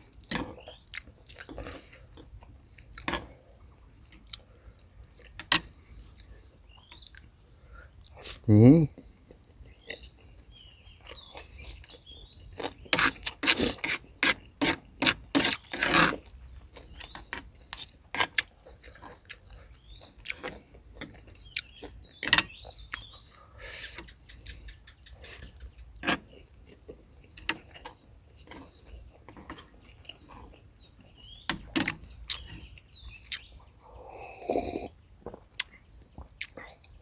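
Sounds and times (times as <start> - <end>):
chewing and mouth smacks: 35.2 - 37.0.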